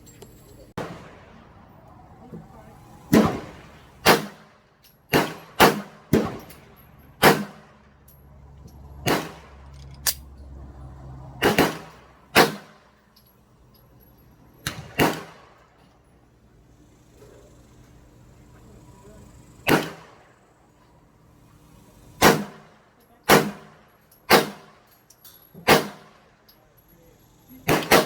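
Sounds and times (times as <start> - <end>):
handgun shots echoing: 4.0 - 4.4, 5.1 - 6.6, 7.2 - 7.6, 11.4 - 12.8, 14.6 - 15.5, 19.7 - 20.1, 22.2 - 22.6, 23.2 - 24.7, 25.6 - 26.1, 27.6 - 28.0.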